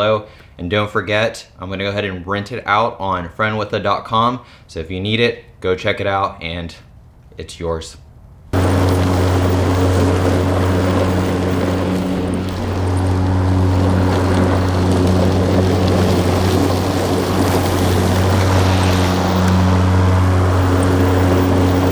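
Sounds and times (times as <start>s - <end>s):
electric lawnmower running: 8.6s - 21.9s.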